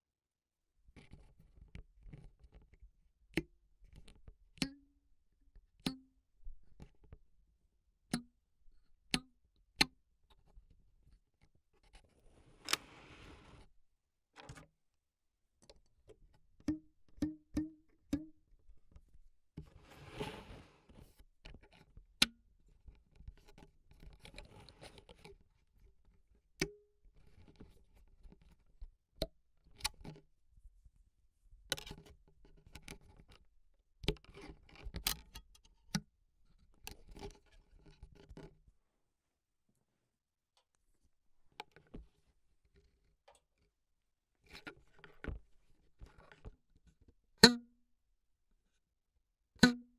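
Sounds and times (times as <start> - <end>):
brush swishes: 19.8 - 20.8.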